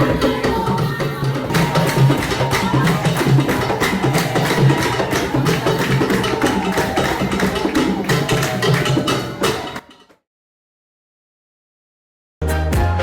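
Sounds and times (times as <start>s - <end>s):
upbeat music with bass: 12.4s - 13.0s.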